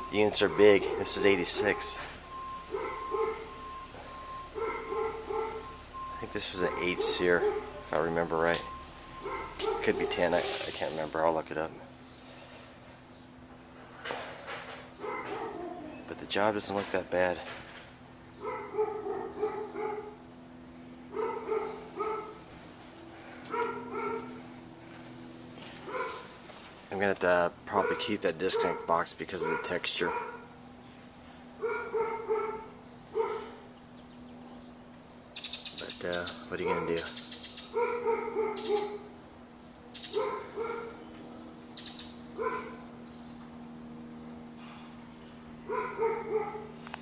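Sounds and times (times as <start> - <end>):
low hum: 0.0 - 27.7
dog barking: 0.4 - 2.0, 2.7 - 3.6, 4.6 - 5.6, 6.6 - 7.9, 9.2 - 10.3, 15.0 - 15.8, 18.4 - 20.2, 21.1 - 22.4, 23.5 - 24.4, 25.9 - 26.2, 27.8 - 30.5, 31.6 - 33.6, 36.6 - 37.1, 37.7 - 39.1, 40.1 - 41.0, 42.4 - 42.8, 45.7 - 46.7.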